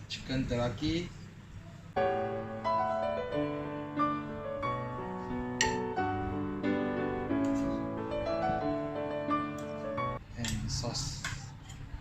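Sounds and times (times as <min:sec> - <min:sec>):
piano music: 0:02.0 - 0:10.2.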